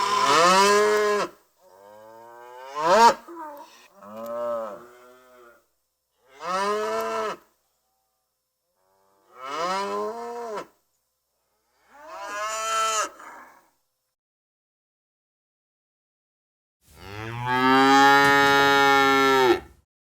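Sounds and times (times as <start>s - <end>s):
cows mooing: 16.9s - 19.8s.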